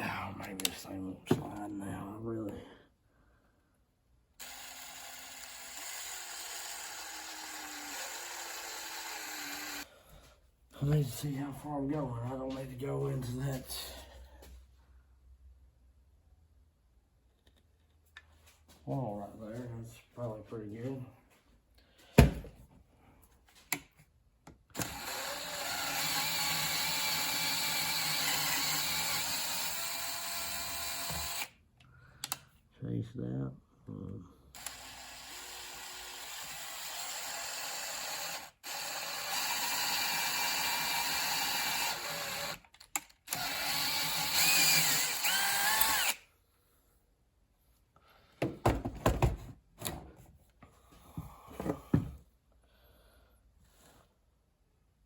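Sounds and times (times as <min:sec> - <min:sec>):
electric drill drilling metal: 0:04.4 - 0:09.9, 0:24.8 - 0:31.5, 0:34.6 - 0:46.2.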